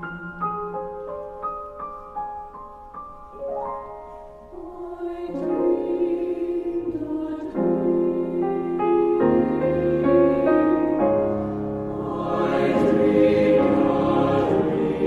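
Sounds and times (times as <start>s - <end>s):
slow soft piano notes: 0.0s - 15.0s
choir singing sustained chords: 4.5s - 15.0s.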